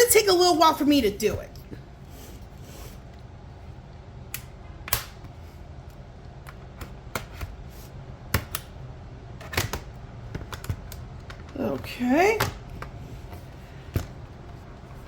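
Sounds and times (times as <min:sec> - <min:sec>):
plastic clips snapping: 0:04.3 - 0:05.2.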